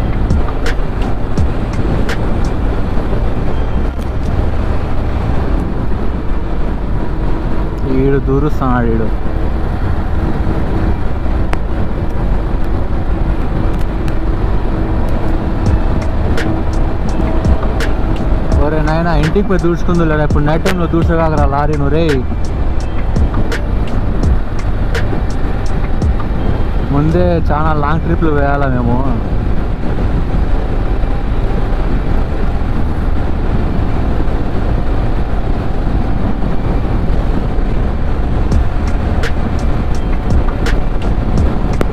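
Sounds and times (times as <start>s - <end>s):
wind rumble on microphone: 0.0s - 41.9s
sharp click: 0.4s - 2.6s, 22.1s - 26.2s, 38.8s - 41.9s.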